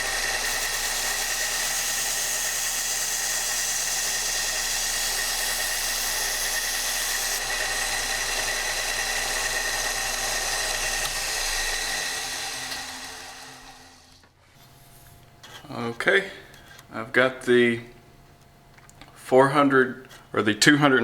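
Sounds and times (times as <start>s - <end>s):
sander motor switching off: 0.0s - 14.2s
belt sander grinding knife: 0.0s - 15.8s.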